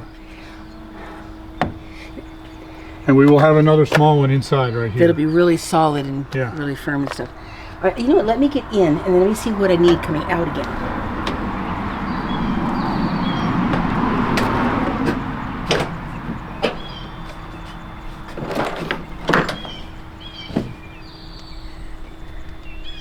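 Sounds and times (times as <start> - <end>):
footsteps knocking on metal steps: 1.5 - 2.6, 6.3 - 20.9
rushing noise: 7.4 - 17.6.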